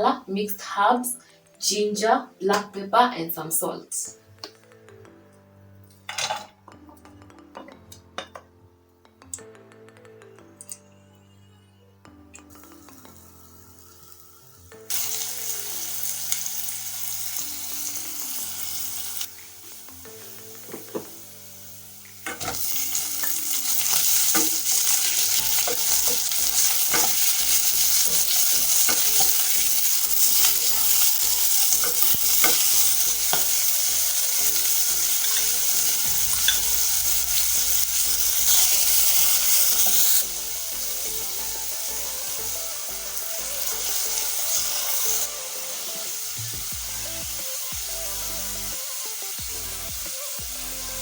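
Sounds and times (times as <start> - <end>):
meat sizzling in oil: 12.6 - 51.0
utensil clicking against pan: 22.2 - 37.2.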